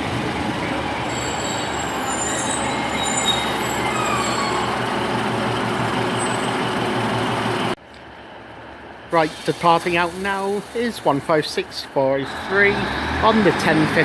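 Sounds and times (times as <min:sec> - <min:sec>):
train rumbling on tracks: 0:00.0 - 0:07.8
high wheel squeal: 0:01.0 - 0:06.9.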